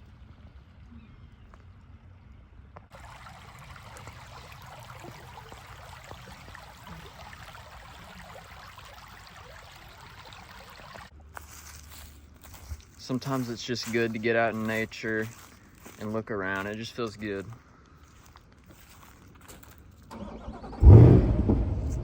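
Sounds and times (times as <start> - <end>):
creek trickling: 2.8 - 20.1.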